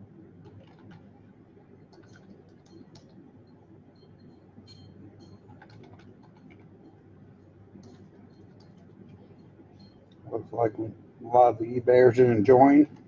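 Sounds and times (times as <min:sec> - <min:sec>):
steady low hum: 0:00.0 - 0:13.0
keyboard typing: 0:00.4 - 0:07.0, 0:07.7 - 0:10.2.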